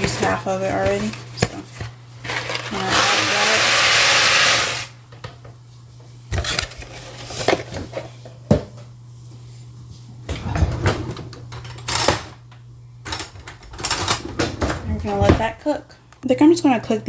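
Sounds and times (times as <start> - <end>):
cookware and utensils clattering: 10.4 - 12.4, 13.0 - 15.6.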